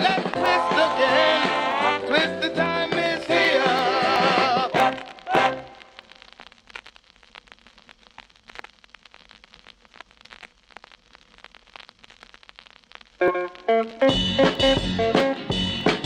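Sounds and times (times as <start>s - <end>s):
song music: 0.0s - 6.1s, 13.2s - 16.0s
faint hiss: 0.0s - 16.0s
vinyl crackles and pops: 0.0s - 16.0s.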